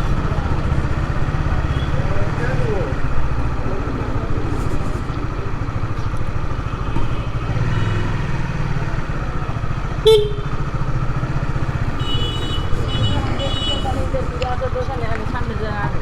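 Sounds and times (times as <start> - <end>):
motorcycle engine running: 0.0 - 16.0
road noise: 0.0 - 16.0
horn beep: 10.0 - 10.7.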